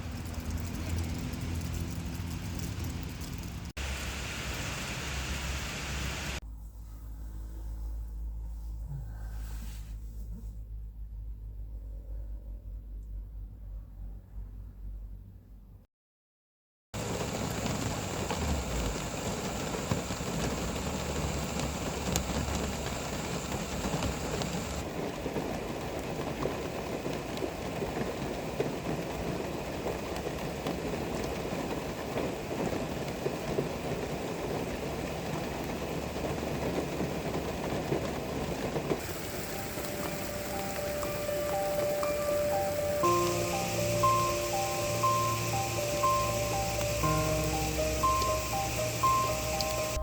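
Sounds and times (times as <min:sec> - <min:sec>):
heavy rain falling: 0:00.0 - 0:06.4, 0:17.0 - 0:50.0
faint musical tones: 0:39.0 - 0:50.0.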